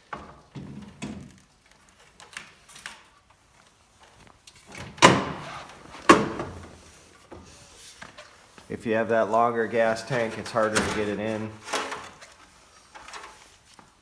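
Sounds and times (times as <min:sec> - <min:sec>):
heavy metal clunks: 0:05.0 - 0:06.7.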